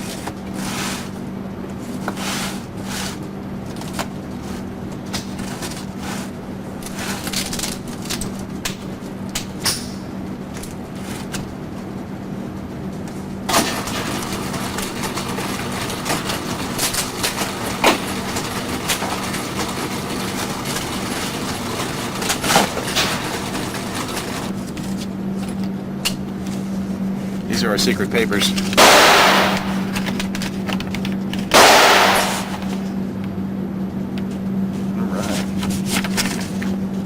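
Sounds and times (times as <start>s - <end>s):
steady low hum: 0.0s - 37.0s
gunshots: 28.7s - 30.0s, 31.5s - 32.8s.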